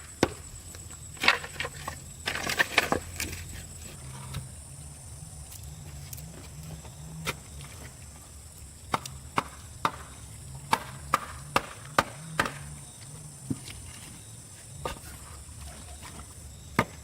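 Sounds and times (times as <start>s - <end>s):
strikes on wood: 8.9s - 10.1s, 10.7s - 12.7s.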